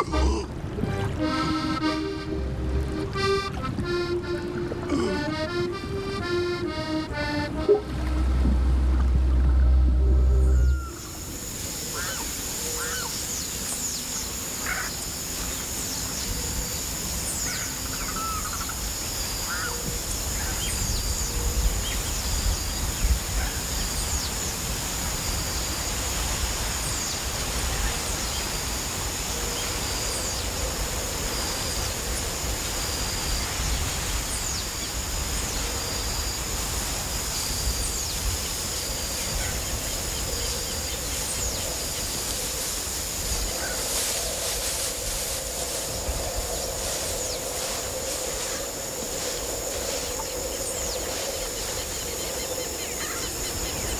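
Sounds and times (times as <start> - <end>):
low rumble: 7.8 - 11.1.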